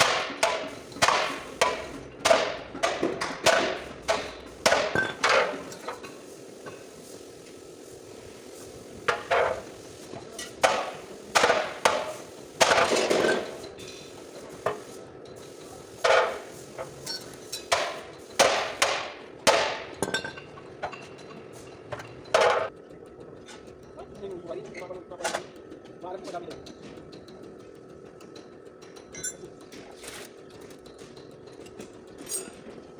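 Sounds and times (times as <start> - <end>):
hammer on sheet metal: 0.0 - 5.4, 17.7 - 19.9.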